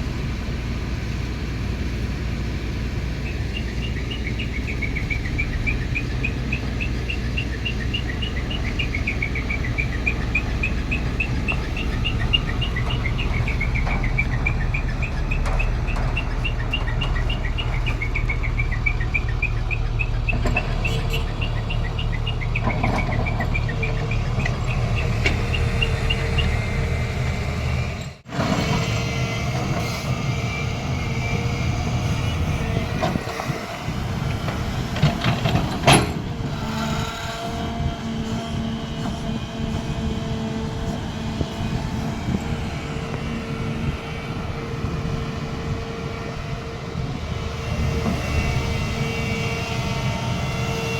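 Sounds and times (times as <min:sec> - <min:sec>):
diesel machinery rumbling: 0:00.0 - 0:50.9
quick high chirps: 0:03.3 - 0:26.8.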